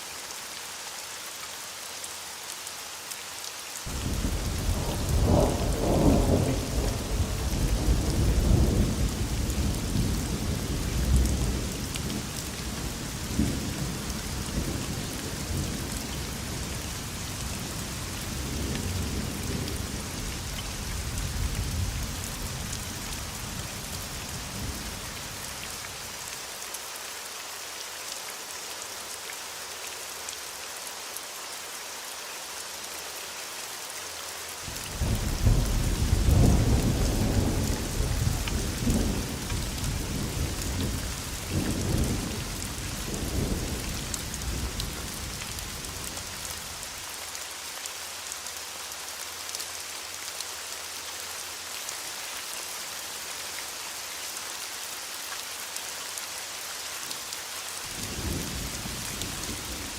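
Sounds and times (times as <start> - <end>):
heavy rain hissing: 0.0 - 59.9
thunder rumbling: 3.9 - 11.6, 35.0 - 44.8.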